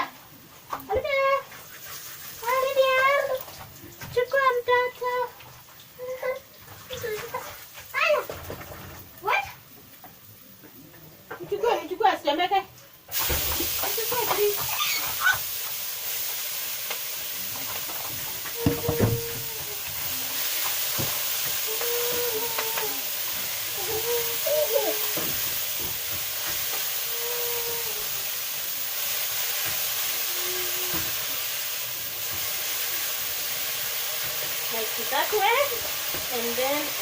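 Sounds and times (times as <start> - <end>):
vegetables sizzling in a pan: 0.0 - 37.0
spoon knocking against pan: 18.6 - 19.5.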